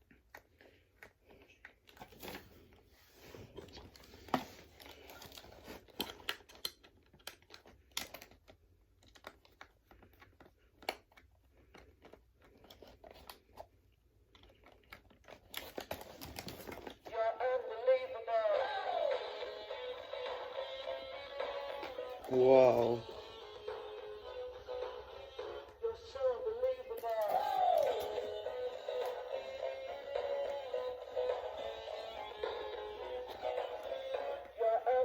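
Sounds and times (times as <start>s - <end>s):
toy song through small speaker: 17.0s - 35.0s.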